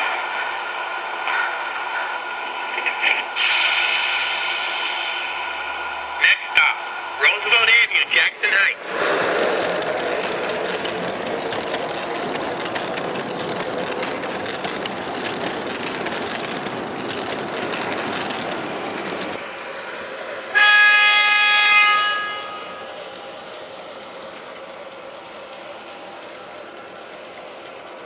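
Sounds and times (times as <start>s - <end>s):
model train rumbling on track: 0.0s - 28.0s
train horn blast: 20.5s - 23.0s.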